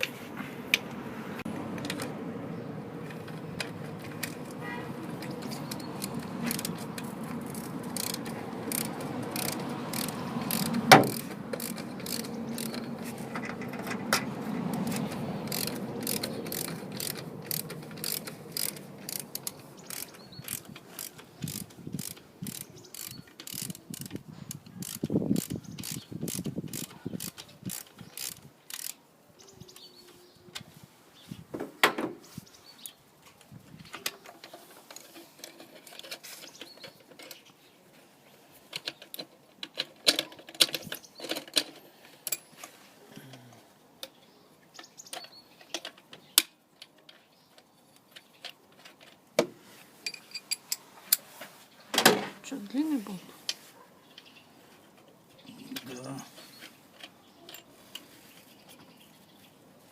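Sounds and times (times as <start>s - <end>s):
tool clatter: 5.2s - 24.2s
ratchet wrench clicking: 5.3s - 13.0s, 14.7s - 29.0s.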